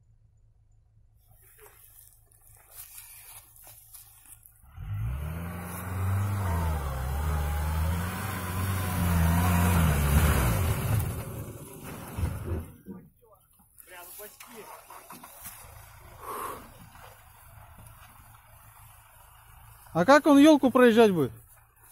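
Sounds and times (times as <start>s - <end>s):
off-road vehicle engine revving: 4.6s - 12.9s.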